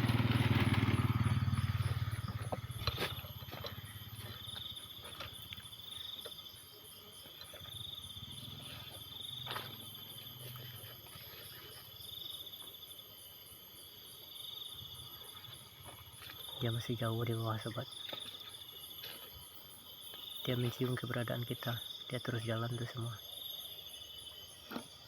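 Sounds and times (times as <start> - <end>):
insect lower buzzing call: 0.0 - 16.6
insect high-pitched trill: 0.1 - 25.0.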